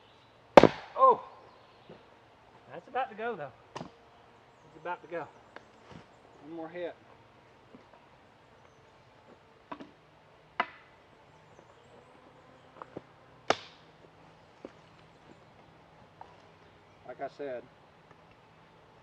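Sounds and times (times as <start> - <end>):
maul striking firewood: 0.6 - 1.3, 3.7 - 4.0, 9.7 - 10.0, 10.6 - 10.9, 13.4 - 14.0.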